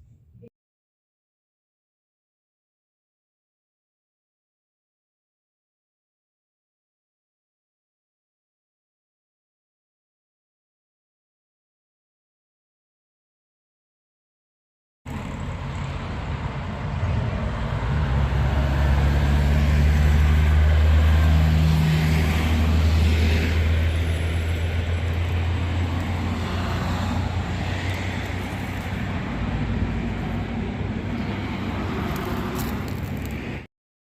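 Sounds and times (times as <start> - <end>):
vehicle engine humming: 15.1 - 33.7.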